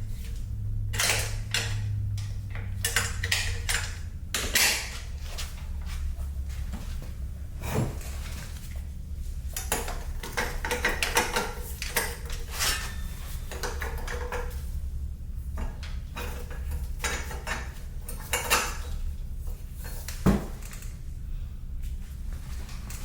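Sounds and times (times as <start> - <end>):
metal tools clinking and clanking: 0.9 - 5.1, 9.6 - 14.6.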